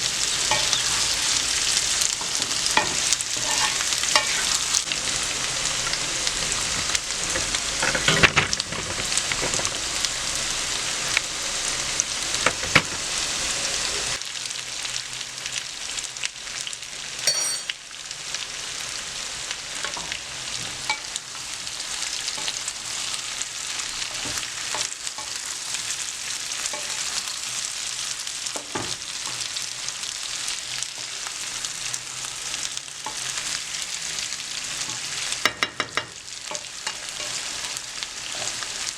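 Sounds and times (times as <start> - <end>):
utensil stirring in pan: 0.0 - 4.9, 21.9 - 31.7, 34.8 - 38.9
potatoes sizzling in oil: 0.0 - 38.9.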